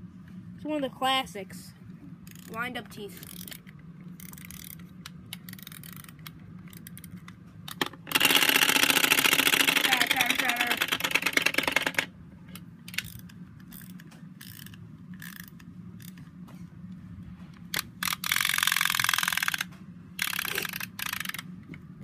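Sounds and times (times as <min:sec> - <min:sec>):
wind-up toy clicking: 0:02.3 - 0:02.6, 0:03.2 - 0:07.2, 0:08.1 - 0:12.1, 0:12.9 - 0:16.2, 0:18.0 - 0:21.5.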